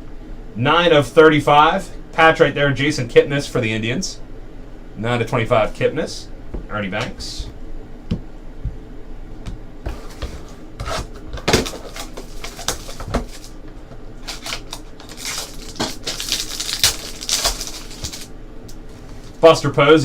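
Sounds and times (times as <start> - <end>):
cards and packaging rustling: 10.8 - 13.6, 14.2 - 18.3.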